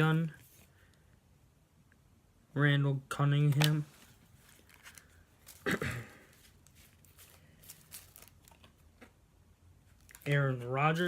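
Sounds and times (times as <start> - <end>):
trading cards rustling and clicking: 3.4 - 9.1, 9.9 - 11.0.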